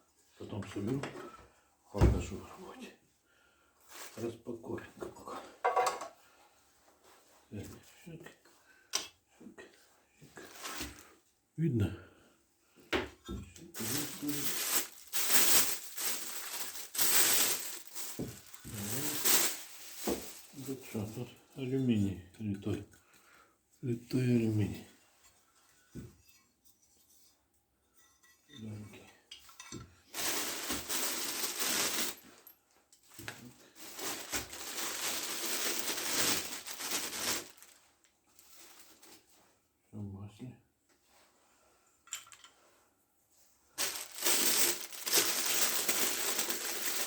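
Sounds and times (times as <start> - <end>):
packaging rustling and crinkling: 3.9 - 4.2, 10.4 - 11.1, 13.7 - 21.0, 30.1 - 32.5, 33.1 - 37.8, 38.4 - 39.3, 43.8 - 47.0.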